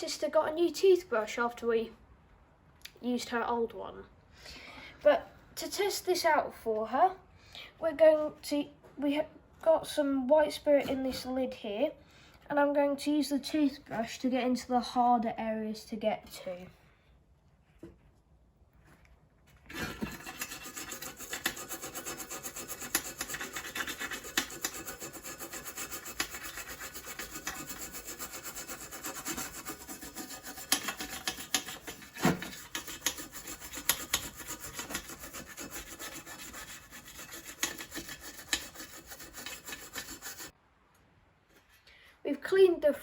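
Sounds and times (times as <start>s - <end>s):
toothbrush scrubbing: 19.7s - 40.5s.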